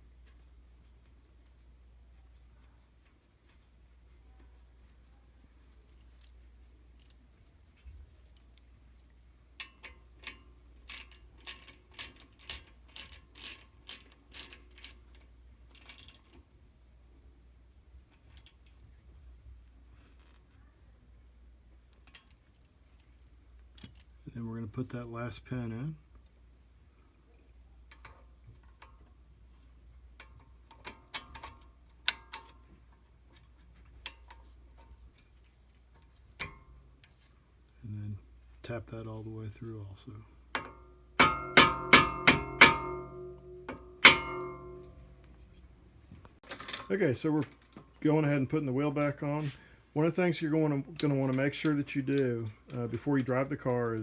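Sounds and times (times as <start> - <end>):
metallic clicks of brake caliper parts: 9.6 - 16.4, 21.9 - 23.1, 30.2 - 32.7, 36.0 - 37.2, 40.6 - 45.4.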